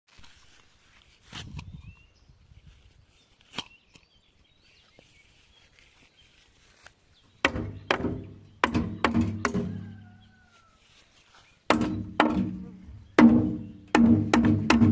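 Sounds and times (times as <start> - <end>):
heavy blows on wood: 7.4 - 10.1, 11.7 - 14.9.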